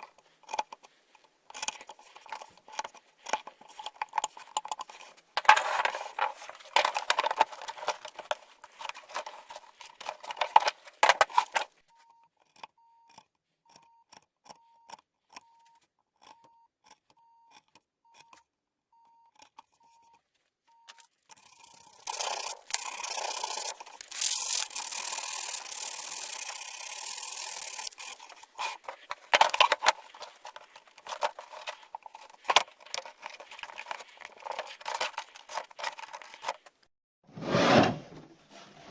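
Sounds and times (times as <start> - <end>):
chisel scraping wood: 21.4 - 36.5.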